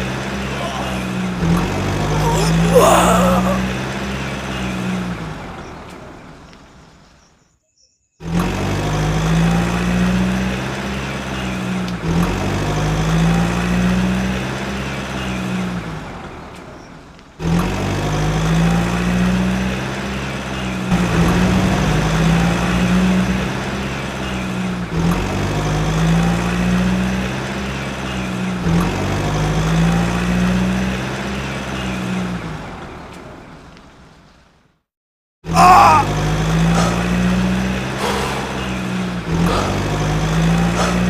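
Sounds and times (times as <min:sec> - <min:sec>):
low engine-like hum: 0:19.7 - 0:30.3, 0:35.6 - 0:41.0.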